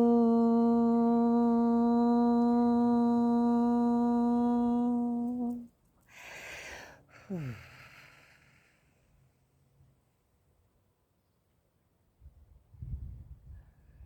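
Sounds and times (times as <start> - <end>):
woman humming steady tone: 0.0 - 6.5, 7.1 - 8.3
breathing: 6.0 - 9.5
woman sighing: 6.2 - 8.6.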